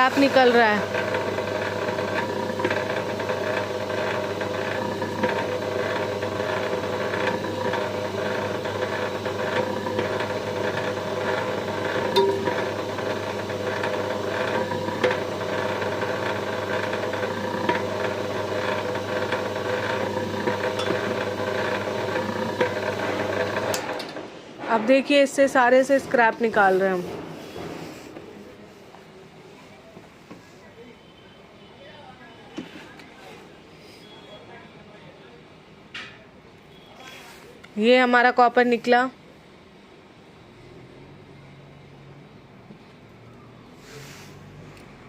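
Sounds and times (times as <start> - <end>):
wire stripping machine humming: 0.0 - 24.2.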